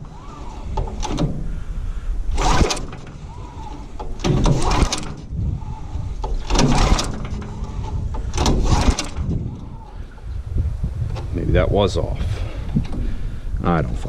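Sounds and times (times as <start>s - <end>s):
recoil starter rope pulls: 0.0s - 10.2s.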